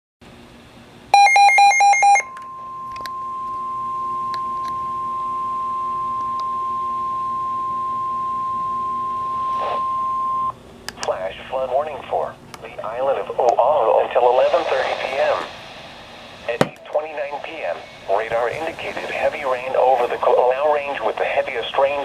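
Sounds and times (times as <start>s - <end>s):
steady pure alarm tone: 1.1s - 10.6s.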